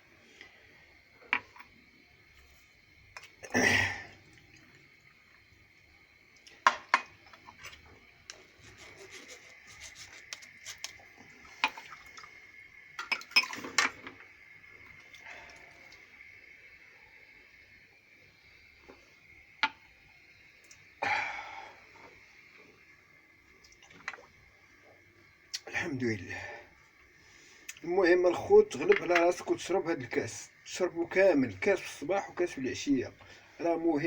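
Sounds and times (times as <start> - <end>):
faint steady high hum: 0.0 - 34.0
breathy gasp: 21.0 - 21.8.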